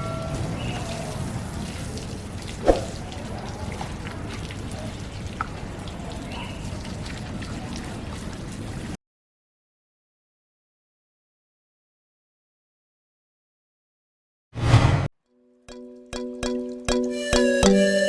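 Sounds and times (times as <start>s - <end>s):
water running and splashing: 0.4s - 9.0s.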